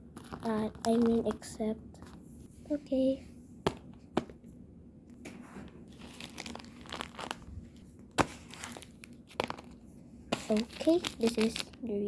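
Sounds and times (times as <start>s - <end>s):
squishies crinkling and crackling: 0.1s - 1.7s, 5.8s - 12.0s.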